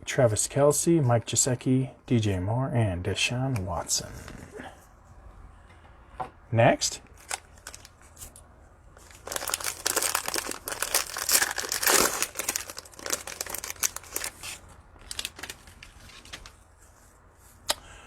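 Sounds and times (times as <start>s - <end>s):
cellophane wrapper crinkling: 7.2s - 8.4s, 9.0s - 16.6s.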